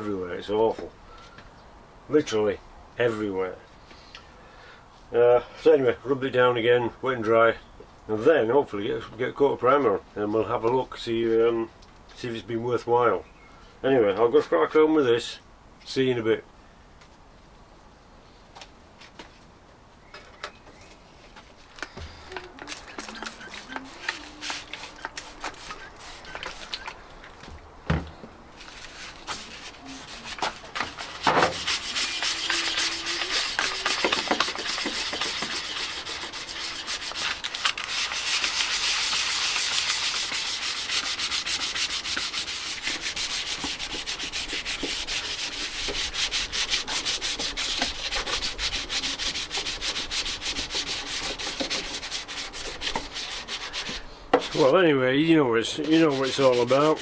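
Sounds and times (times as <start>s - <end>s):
hand sanding scraping strokes: 22.6s - 27.0s, 28.6s - 54.8s, 55.6s - 57.0s.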